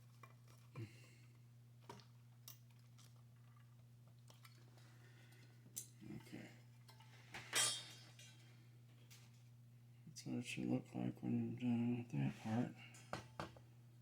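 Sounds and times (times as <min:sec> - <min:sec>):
steady low hum: 0:00.1 - 0:14.0.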